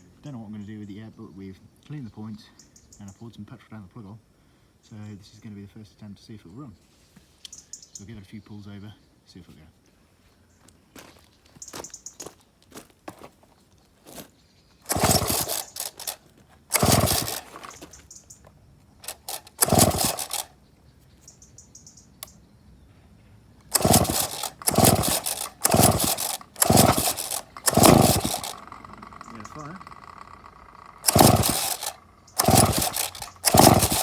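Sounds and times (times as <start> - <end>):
engine spinning over briefly: 14.9 - 18.0, 19.0 - 20.5, 23.7 - 34.0
chainsaw pull-starter yanked: 14.9 - 18.2, 19.0 - 20.5, 23.7 - 34.0.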